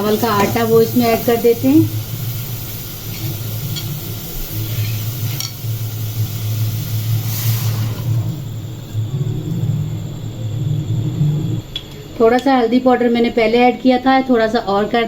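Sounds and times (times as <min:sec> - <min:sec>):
batter sizzling in oil: 0:00.0 - 0:11.6
steady low hum: 0:00.0 - 0:15.0.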